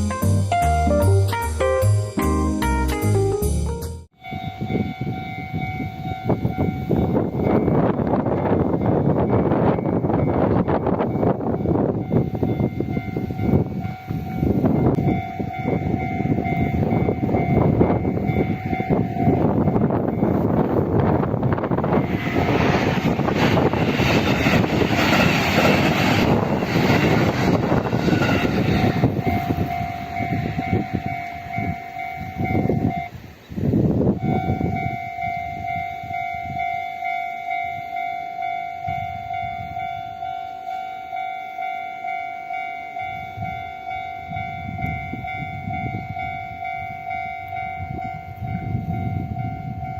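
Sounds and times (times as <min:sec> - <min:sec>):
crossing warning bell ringing: 0:04.2 - 0:49.9
train wheel rumble: 0:04.3 - 0:49.9.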